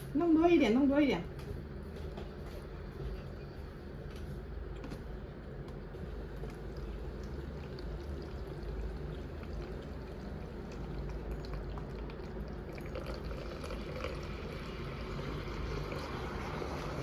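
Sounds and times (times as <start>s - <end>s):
water pouring and bubbling: 5.9s - 17.0s.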